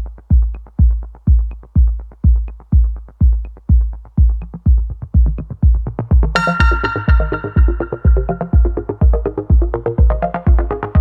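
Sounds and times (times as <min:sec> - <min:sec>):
electronic dance music: 0:00.0 - 0:11.0
bright synthesizer chord: 0:06.4 - 0:09.5.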